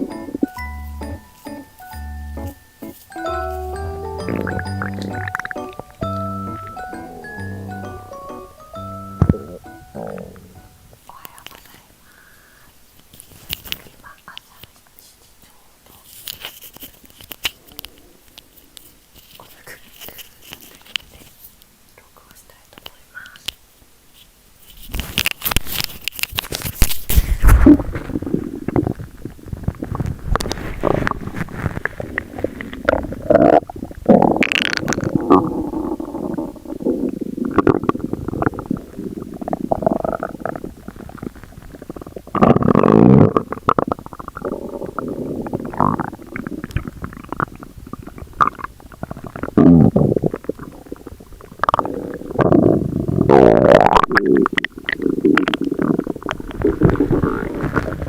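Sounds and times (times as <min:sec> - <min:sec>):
stomach growling: 0:04.2 - 0:11.8, 0:24.9 - 0:58.0.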